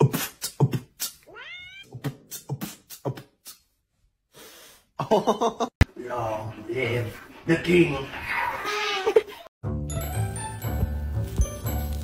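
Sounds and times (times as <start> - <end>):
cat meowing: 1.3 - 1.9.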